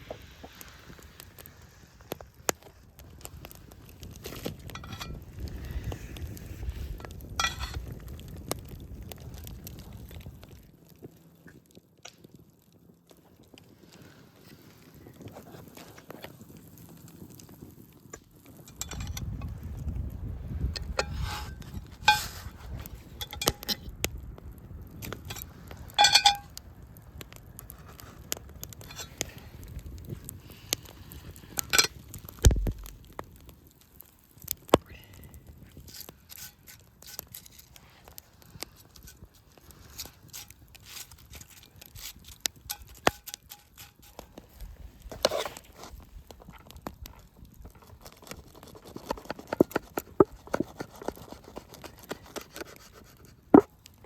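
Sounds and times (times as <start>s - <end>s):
scraping rustle: 0.0s - 10.6s, 18.4s - 23.8s, 27.5s - 33.1s, 35.7s - 54.0s
campfire crackling: 0.0s - 54.0s.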